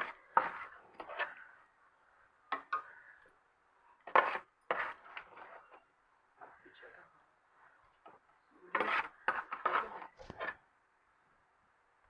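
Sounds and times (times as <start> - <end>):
spoon scraping cooking pot: 0.0 - 1.5, 4.0 - 5.9, 8.0 - 10.6.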